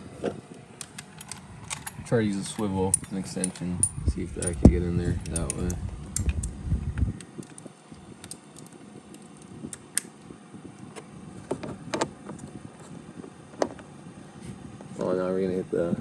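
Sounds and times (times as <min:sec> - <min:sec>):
metal hand tools clinking: 0:01.2 - 0:05.8.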